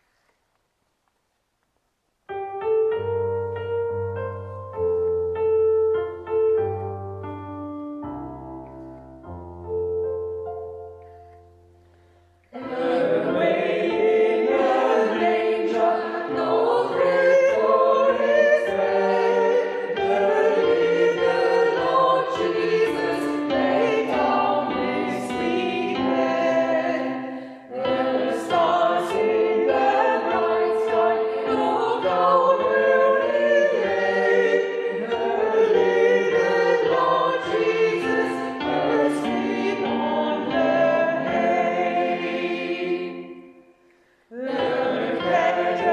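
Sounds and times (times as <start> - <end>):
choir singing: 12.5 - 45.9.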